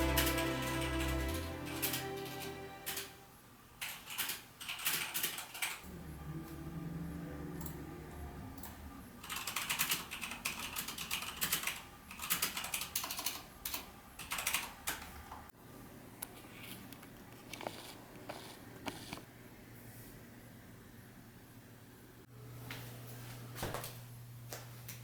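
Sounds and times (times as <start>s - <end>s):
low hum: 5.9s - 9.2s
rapid clicking and tapping: 9.2s - 15.1s.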